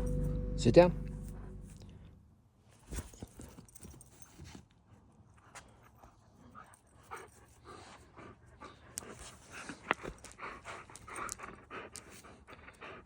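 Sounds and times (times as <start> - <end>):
dog panting: 5.4 - 13.0.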